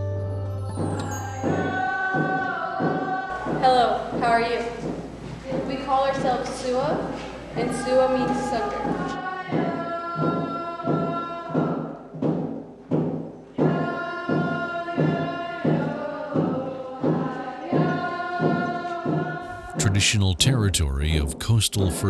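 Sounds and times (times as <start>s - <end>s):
voices singing held notes: 13.6s - 22.0s
steady drum beat: 19.5s - 22.0s.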